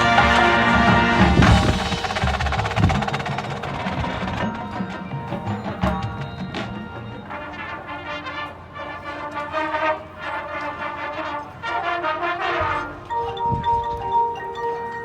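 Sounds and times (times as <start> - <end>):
brass band playing held chords: 0.0 - 13.3.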